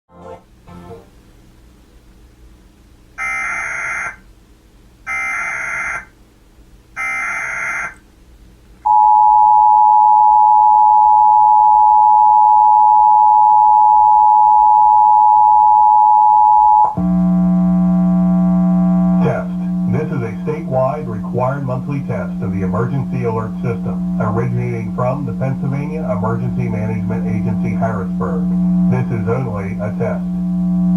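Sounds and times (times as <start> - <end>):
data tone bursts: 8.9 - 30.9
low buzzing tone: 8.9 - 30.9
two-tone attention signal: 8.9 - 30.9
person speaking: 19.2 - 30.4.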